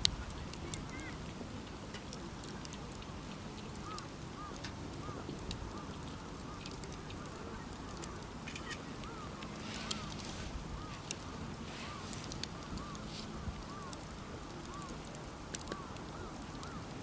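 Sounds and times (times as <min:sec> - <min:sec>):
steady low rumble: 0:00.0 - 0:15.5
campfire crackling and popping: 0:00.0 - 0:17.0
short faint calls: 0:07.2 - 0:14.0.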